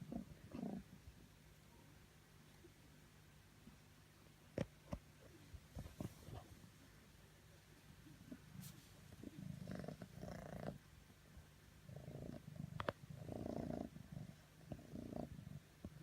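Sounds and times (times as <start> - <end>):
cat purring: 0.0 - 1.1, 8.0 - 10.9, 11.8 - 16.0.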